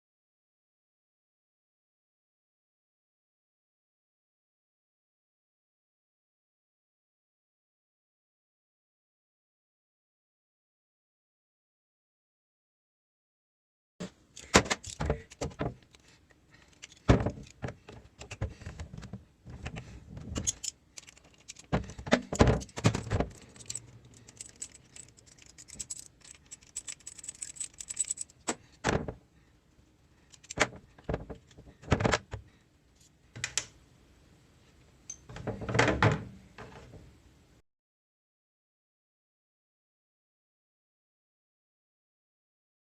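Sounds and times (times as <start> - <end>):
metal tools clinking and knocking: 14.4 - 16.0, 16.6 - 17.6, 19.6 - 28.7, 30.3 - 30.6.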